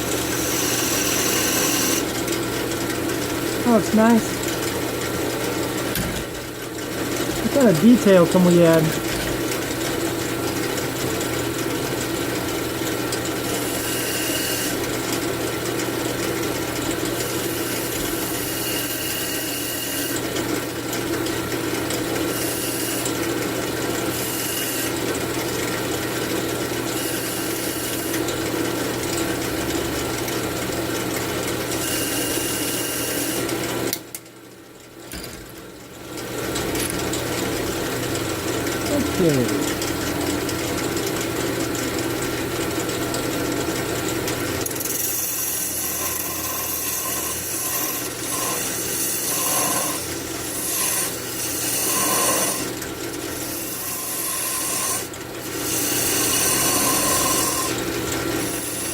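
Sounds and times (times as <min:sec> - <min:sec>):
tool scraping spinning wood: 0:00.0 - 0:05.6, 0:44.2 - 0:58.9
wood lathe running: 0:00.0 - 0:06.0, 0:06.8 - 0:33.9, 0:36.2 - 0:58.9.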